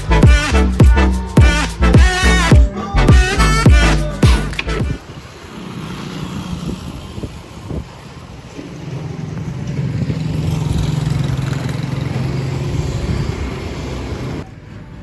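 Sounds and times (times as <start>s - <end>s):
vehicle engine humming: 0.0s - 15.0s.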